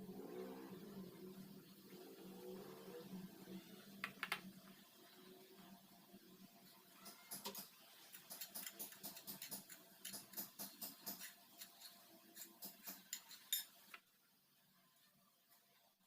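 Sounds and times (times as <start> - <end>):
metal utensil clicking against bowl: 7.4 - 13.7.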